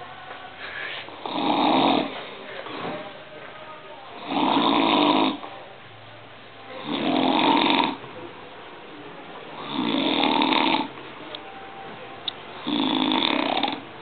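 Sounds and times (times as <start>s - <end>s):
man snoring: 1.2s - 2.2s, 4.2s - 5.4s, 6.8s - 8.0s, 9.6s - 10.9s, 12.6s - 13.8s.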